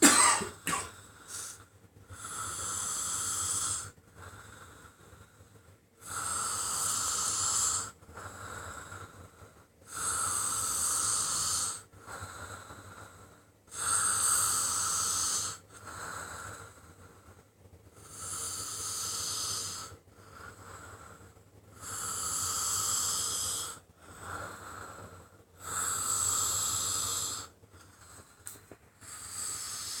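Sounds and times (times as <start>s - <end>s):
person snoring: 0.0s - 1.6s, 2.2s - 3.9s, 6.0s - 8.7s, 9.9s - 11.8s, 13.7s - 16.3s, 18.0s - 20.7s, 21.8s - 27.5s, 29.0s - 30.0s
quiet breathing: 0.0s - 30.0s.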